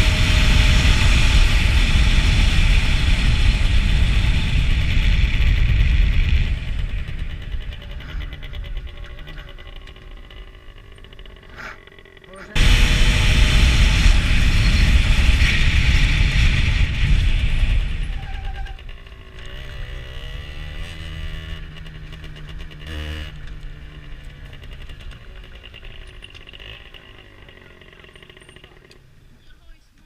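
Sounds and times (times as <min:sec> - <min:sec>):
loud rushing noise: 0:00.0 - 0:08.3, 0:12.6 - 0:18.6
motorcycle engine: 0:00.0 - 0:29.9.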